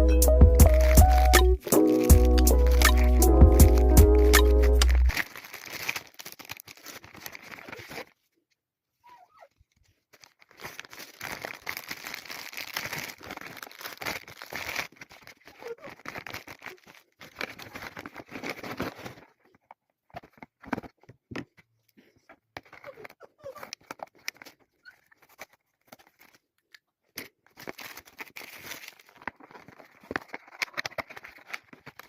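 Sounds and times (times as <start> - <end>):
music: 0.0 - 5.1
packaging crinkling and rustling: 0.7 - 8.4, 9.5 - 32.0.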